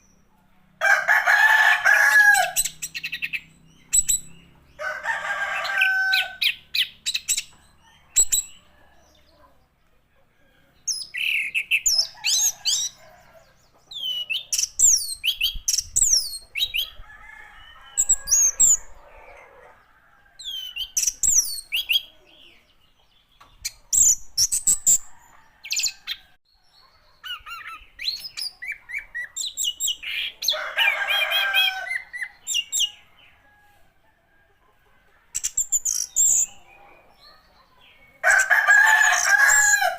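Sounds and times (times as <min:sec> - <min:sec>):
thrush singing whistled notes: 0:02.6 - 0:04.6.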